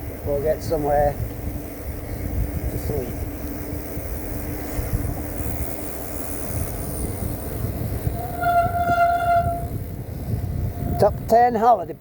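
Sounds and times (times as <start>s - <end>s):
rolling rumble: 0.0s - 12.0s
wind: 0.0s - 12.0s
horn single steady note: 8.2s - 9.7s.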